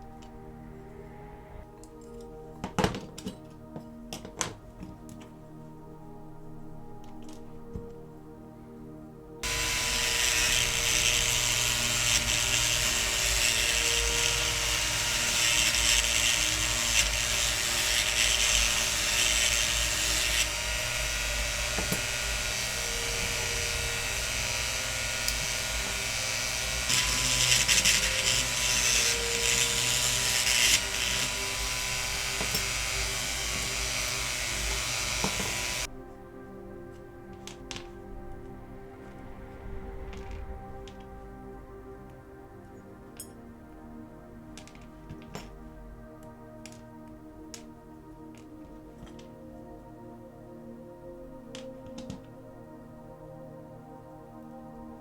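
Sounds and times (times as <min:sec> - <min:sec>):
small power drill drilling: 0:09.4 - 0:35.9.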